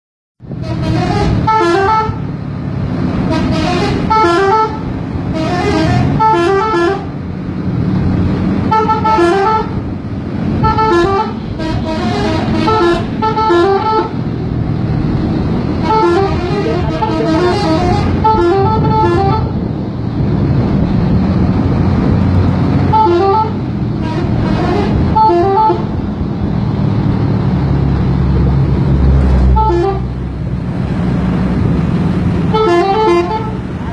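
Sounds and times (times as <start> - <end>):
bus engine running: 0.4 - 33.9
multi-tone musical horns: 0.6 - 2.2, 3.3 - 7.1, 8.7 - 9.8, 10.6 - 14.2, 15.8 - 19.5, 22.9 - 25.8, 29.5 - 30.1, 32.5 - 33.6.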